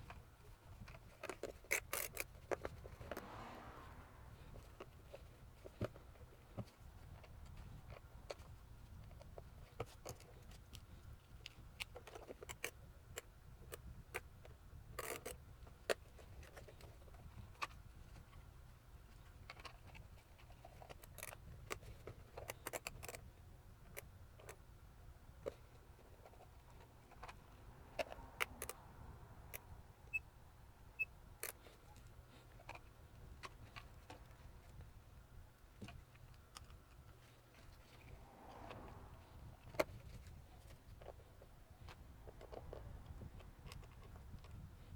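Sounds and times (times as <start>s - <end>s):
small parts clicking and tapping: 19.1s - 23.3s, 25.4s - 28.8s.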